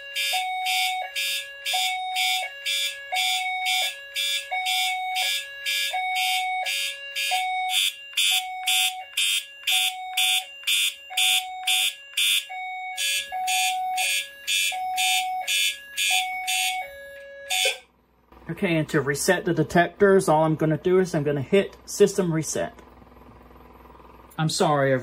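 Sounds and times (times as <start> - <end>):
hi-lo alarm tone: 0.0 - 17.9
pulsing fire alarm horn: 0.0 - 17.9.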